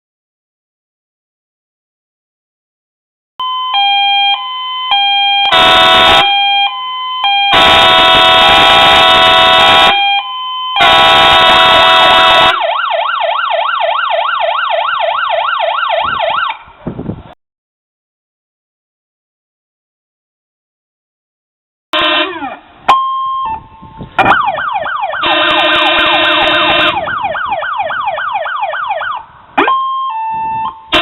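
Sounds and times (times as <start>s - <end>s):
fire engine siren: 3.4s - 16.8s, 22.0s - 31.0s
air horn blasts: 5.5s - 6.4s, 7.5s - 10.1s, 10.8s - 12.6s, 21.9s - 22.6s, 25.2s - 27.2s, 29.6s - 31.0s.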